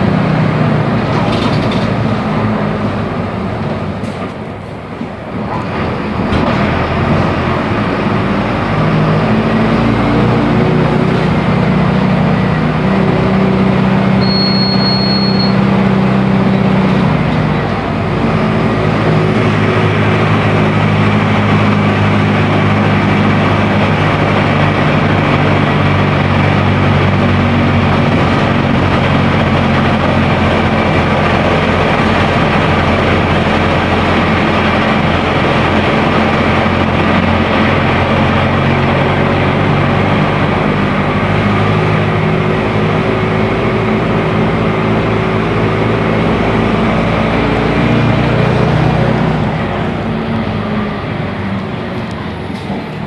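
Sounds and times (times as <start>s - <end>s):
bus diesel engine running: 0.0s - 53.0s
short high beep: 14.2s - 15.7s.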